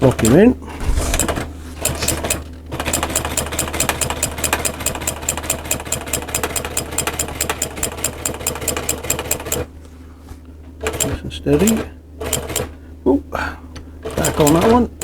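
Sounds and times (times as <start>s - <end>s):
sewing machine needle clattering: 0.2s - 9.7s, 10.8s - 12.7s, 14.1s - 15.0s
sewing machine motor hum: 0.8s - 9.6s, 10.9s - 12.7s.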